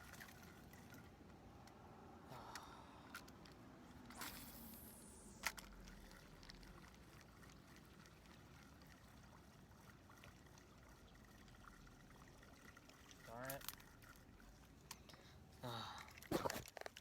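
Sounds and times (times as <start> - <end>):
lake water lapping: 0.0 - 1.2, 4.1 - 16.3
whoosh: 4.1 - 5.8.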